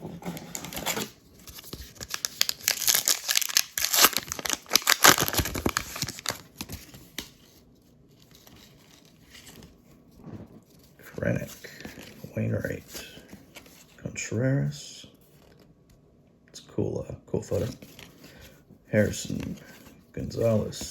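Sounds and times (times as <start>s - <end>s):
wrapper tearing and crinkling: 0.5s - 6.8s.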